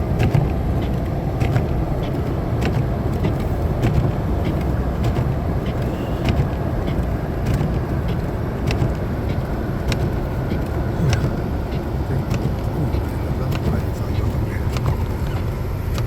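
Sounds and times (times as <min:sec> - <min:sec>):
car engine and tyres rumbling: 0:00.0 - 0:16.0.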